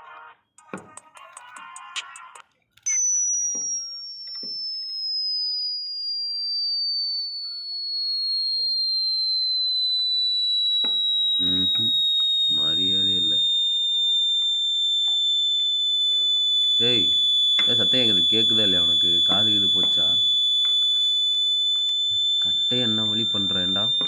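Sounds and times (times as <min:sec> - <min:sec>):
high-pitched tone gliding down: 0:02.9 - 0:13.5.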